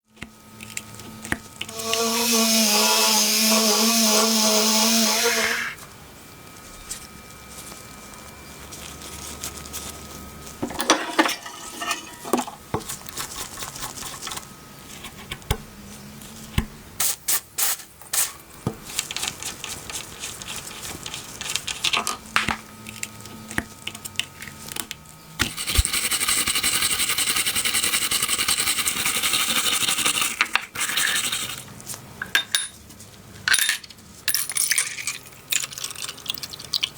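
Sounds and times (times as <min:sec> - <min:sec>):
powered tool hissing: 0:01.7 - 0:05.8, 0:25.4 - 0:28.5.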